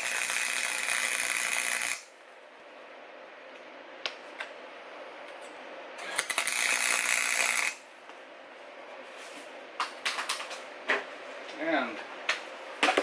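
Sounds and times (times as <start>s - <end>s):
welding arc crackling: 0.0s - 2.1s, 6.0s - 7.8s.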